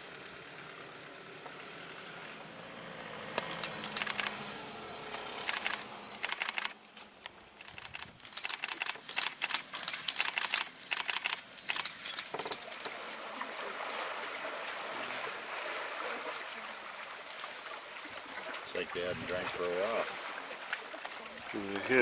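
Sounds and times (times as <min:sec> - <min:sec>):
wet clicks and splashes: 0:05.1 - 0:13.0, 0:20.7 - 0:22.0.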